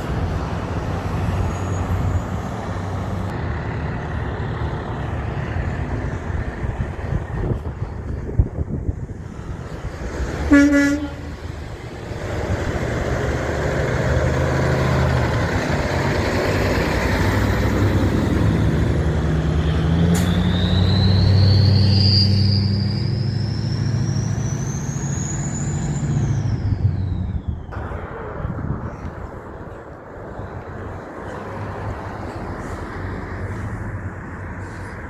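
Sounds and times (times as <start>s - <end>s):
diesel truck engine passing: 0.0s - 35.0s
horn toot: 10.4s - 11.5s.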